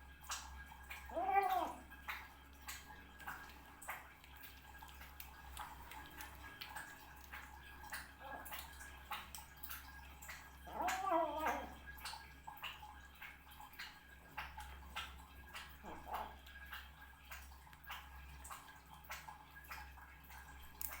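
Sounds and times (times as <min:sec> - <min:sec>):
cat chewing wet food: 0:00.2 - 0:21.0
cat wavering vocal sound: 0:00.9 - 0:02.0, 0:08.2 - 0:08.7, 0:10.6 - 0:11.8, 0:15.8 - 0:16.4.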